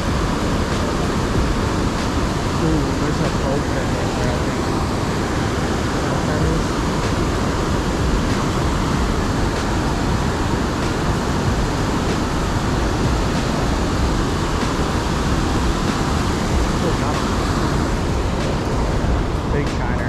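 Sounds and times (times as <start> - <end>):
river water rushing: 0.0 - 20.0.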